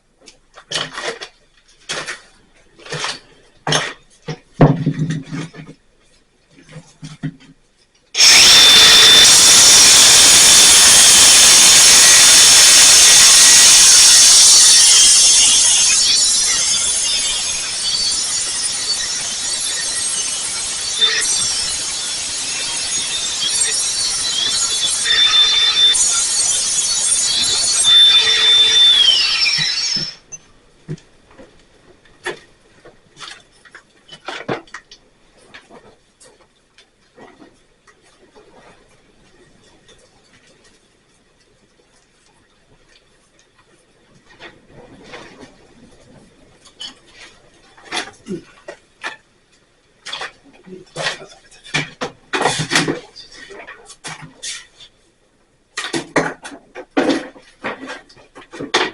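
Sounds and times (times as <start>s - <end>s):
power tool grinding: 8.2s - 30.4s.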